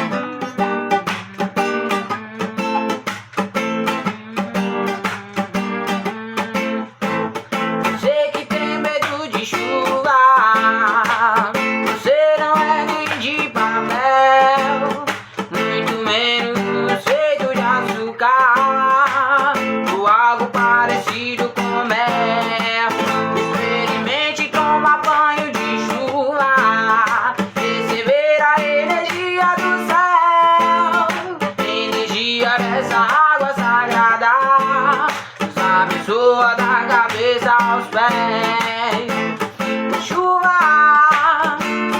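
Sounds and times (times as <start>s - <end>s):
acoustic guitar strumming: 0.0s - 41.9s
bending guitar melody: 0.0s - 41.9s.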